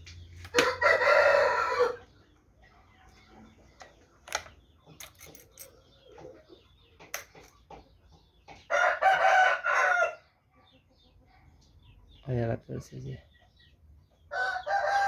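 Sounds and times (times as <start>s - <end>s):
rooster crowing: 0.5s - 2.1s, 8.7s - 10.2s, 14.3s - 15.0s
chicken clucking: 0.6s - 5.0s, 5.7s - 15.0s.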